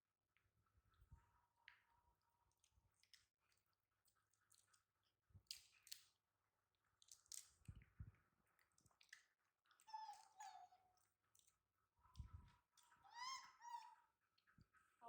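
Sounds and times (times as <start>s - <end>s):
baby monkey crying: 9.9s - 10.7s, 13.0s - 14.0s.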